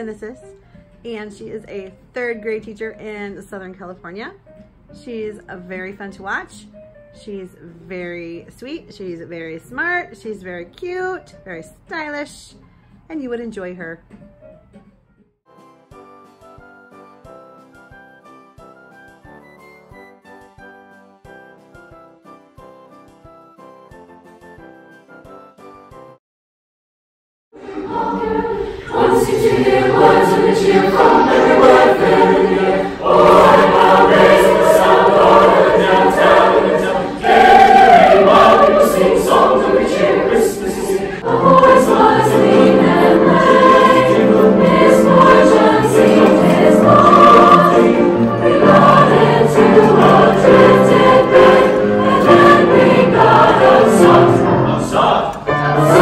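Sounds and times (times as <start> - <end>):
choir singing: 27.6 - 56.0.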